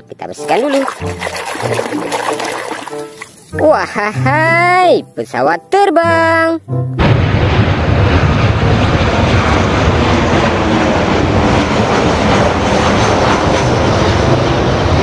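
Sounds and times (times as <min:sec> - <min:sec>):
airplane engine noise: 0:07.0 - 0:15.0.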